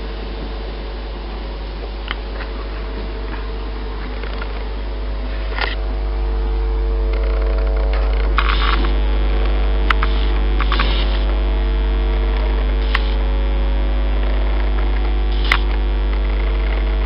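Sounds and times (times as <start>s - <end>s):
electrical hum: 0.0s - 17.0s.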